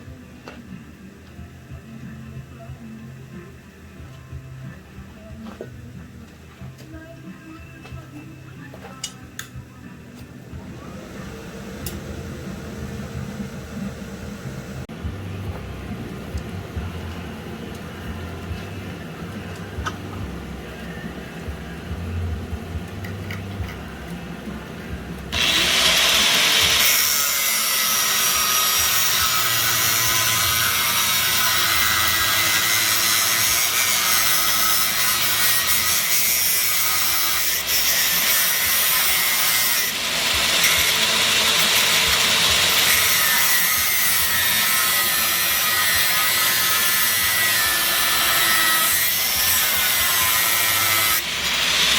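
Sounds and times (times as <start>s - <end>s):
low hum: 10.4s - 25.3s
power tool running under load: 10.5s - 14.9s, 25.3s - 51.9s.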